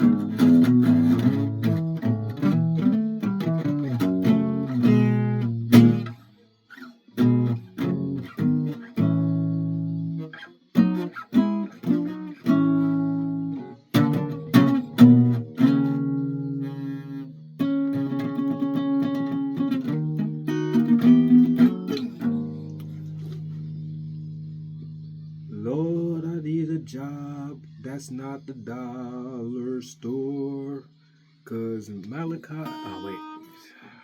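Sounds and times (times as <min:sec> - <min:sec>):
solo guitar playing: 0:00.0 - 0:30.7, 0:32.1 - 0:33.8.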